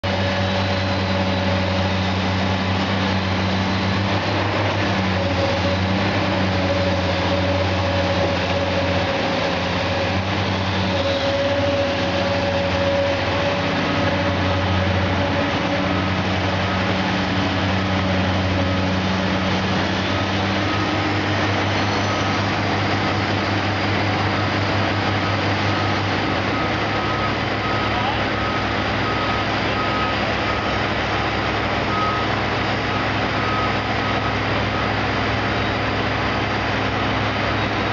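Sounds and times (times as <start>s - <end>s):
truck engine running: 0.0s - 37.9s
faint reversing beeper: 18.4s - 23.2s, 24.4s - 30.9s, 31.8s - 35.0s.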